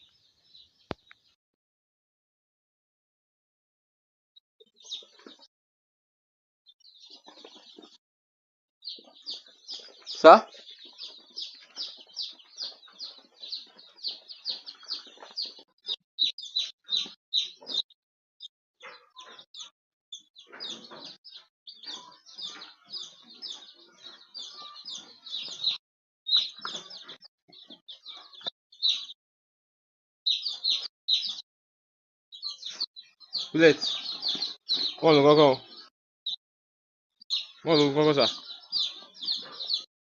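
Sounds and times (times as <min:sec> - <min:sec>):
young chickens chirping: 0:00.0 - 0:01.2, 0:04.6 - 0:05.5, 0:06.7 - 0:08.0, 0:08.8 - 0:18.0, 0:18.8 - 0:29.2, 0:30.3 - 0:31.4, 0:32.3 - 0:35.9, 0:37.2 - 0:39.9.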